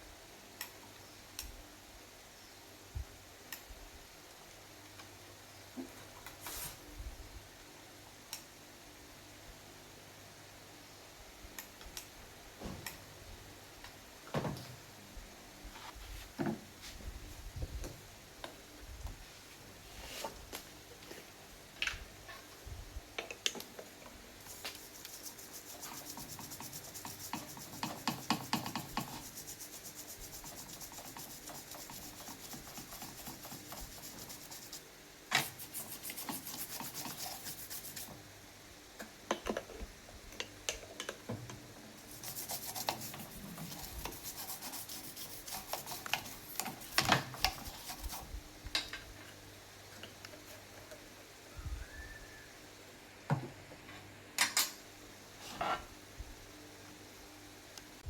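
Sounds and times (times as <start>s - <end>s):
scraping strokes on hard surface: 24.5s - 34.8s, 35.4s - 38.1s, 42.0s - 48.2s.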